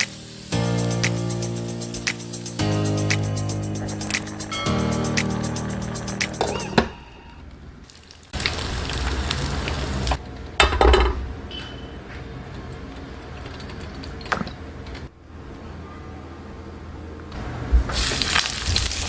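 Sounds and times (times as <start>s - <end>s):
food sizzling in hot oil: 0.0s - 3.0s, 7.9s - 10.2s, 17.9s - 19.0s.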